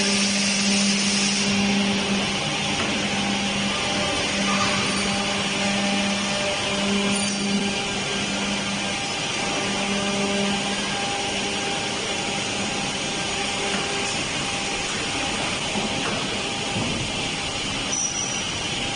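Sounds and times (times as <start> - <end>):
machinery hiss: 0.0 - 7.0
low machine hum: 0.0 - 18.9.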